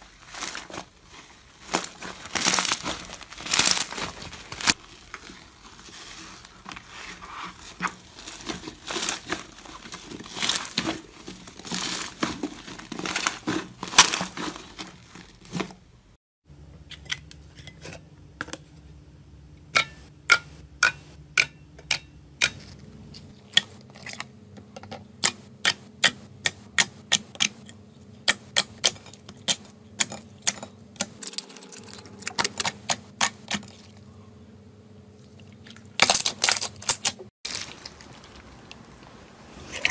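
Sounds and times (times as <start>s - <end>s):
slime crackling and crinkling: 0.0s - 16.2s, 35.8s - 39.9s.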